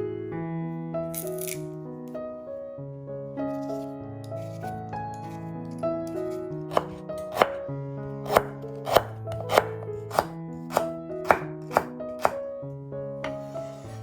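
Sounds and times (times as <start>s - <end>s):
piano music: 0.0s - 14.0s
knife chopping on cutting board: 6.7s - 7.6s, 8.2s - 12.4s, 13.3s - 14.0s.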